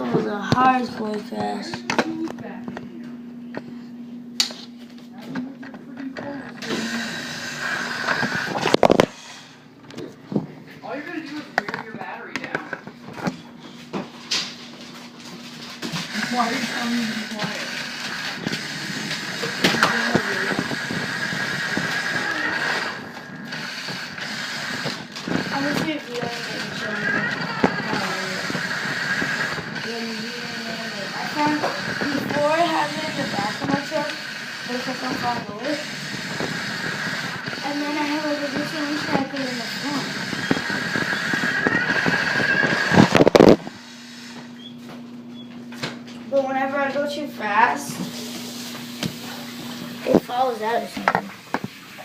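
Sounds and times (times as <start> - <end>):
toy truck motor whining: 6.6 - 9.2, 15.9 - 44.7.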